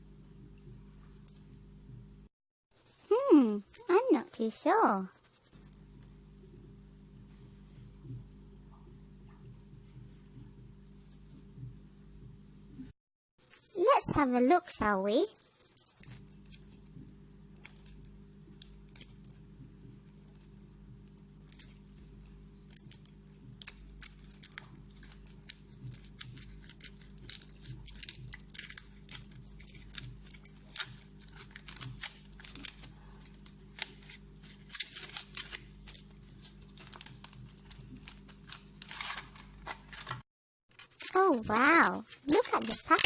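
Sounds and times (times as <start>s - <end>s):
foil wrapper crinkling and tearing: 22.6s - 40.2s.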